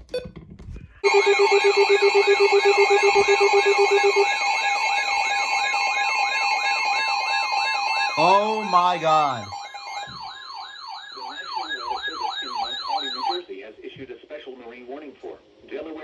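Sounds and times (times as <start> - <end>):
steady alert beeps: 1.0 - 5.9, 7.2 - 13.4
fast pulsing beep: 1.0 - 13.4
warbling siren-like alert tone: 1.0 - 13.4.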